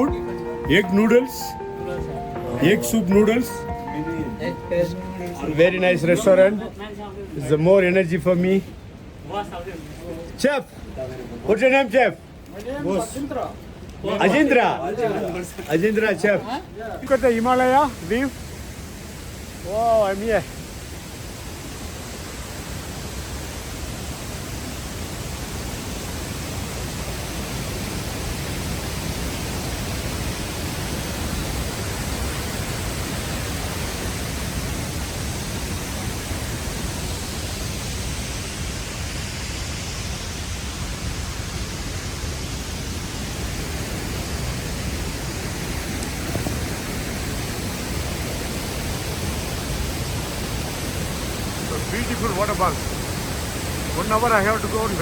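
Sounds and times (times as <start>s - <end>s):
waterfall rushing: 17.1s - 55.0s.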